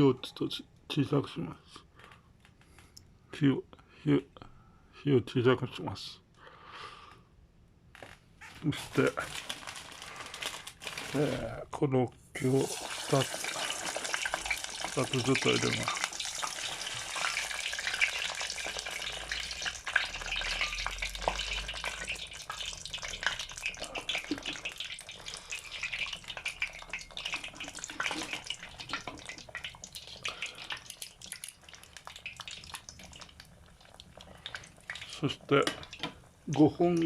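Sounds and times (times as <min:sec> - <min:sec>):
food sizzling in oil: 0:12.4 - 0:36.5.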